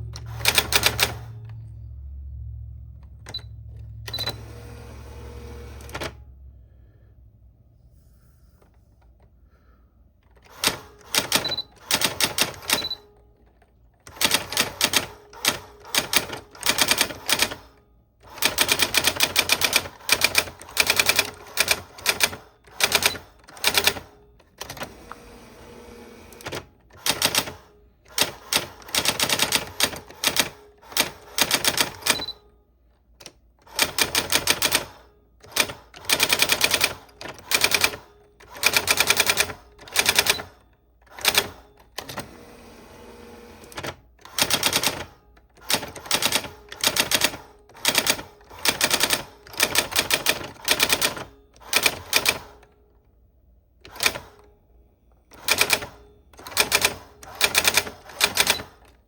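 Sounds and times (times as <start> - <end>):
typewriter key strikes: 0.2 - 1.2.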